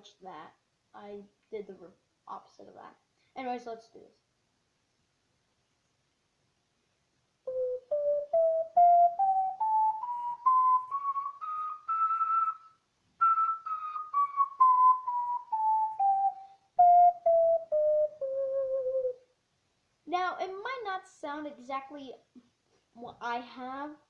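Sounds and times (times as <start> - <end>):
ocarina playing a scale: 7.5 - 19.2.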